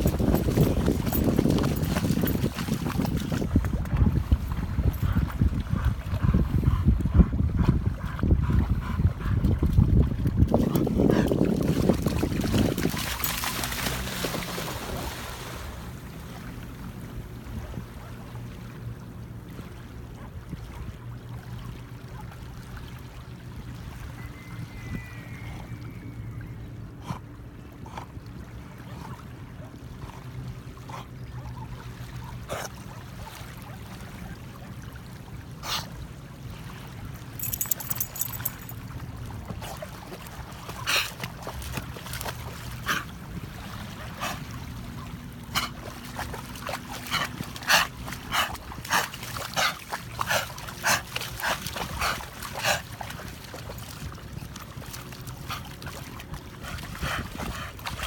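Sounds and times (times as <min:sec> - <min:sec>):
water splashing: 0:10.4 - 0:16.6, 0:36.6 - 0:58.0.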